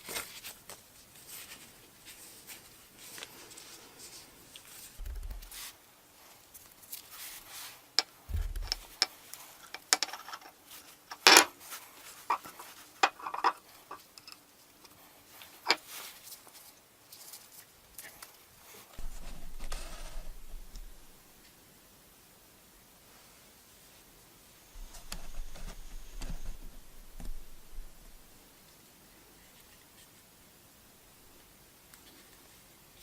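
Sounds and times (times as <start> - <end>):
dull handling thumps: 5.0 - 5.6, 8.3 - 9.0, 19.0 - 21.3, 24.8 - 28.4
low rumble: 5.0 - 5.6, 8.3 - 8.9, 19.0 - 21.3.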